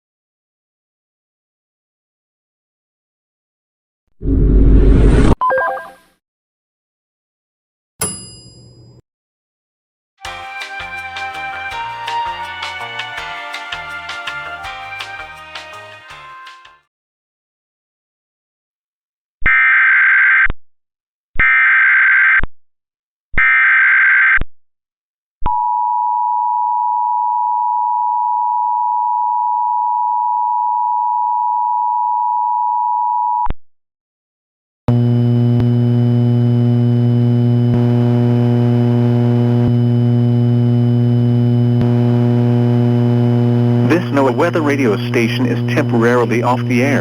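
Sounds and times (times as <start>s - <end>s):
low hum with overtones: 34.9s - 47.0s.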